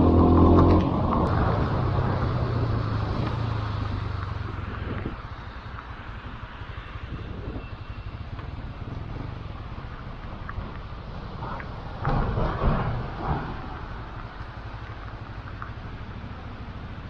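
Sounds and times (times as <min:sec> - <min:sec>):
motorcycle engine: 0:00.0 - 0:17.0
wind and road noise: 0:00.0 - 0:17.0.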